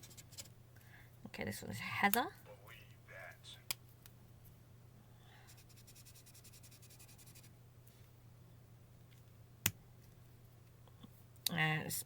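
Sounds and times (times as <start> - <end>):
low steady hum: 0.0 - 12.0
marker scratching on paper: 5.5 - 7.5.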